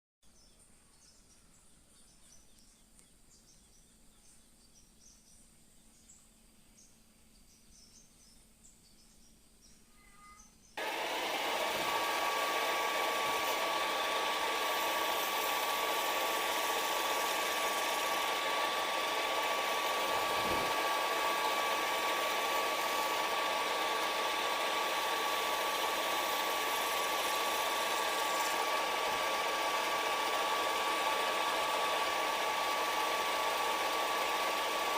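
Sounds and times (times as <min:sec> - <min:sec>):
metal lathe running with whine: 0:10.8 - 0:34.9.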